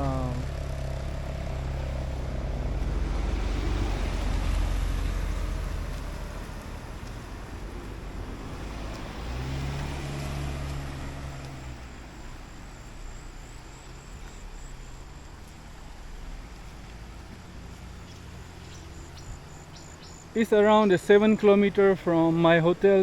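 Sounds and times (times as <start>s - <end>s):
vehicle engine passing: 0.0s - 23.0s
pulsing insect trill: 8.5s - 21.7s.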